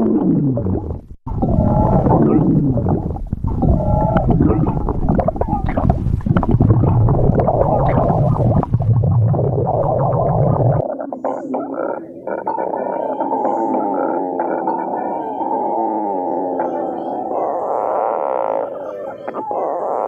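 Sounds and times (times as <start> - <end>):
stomach growling: 0.0 - 20.0.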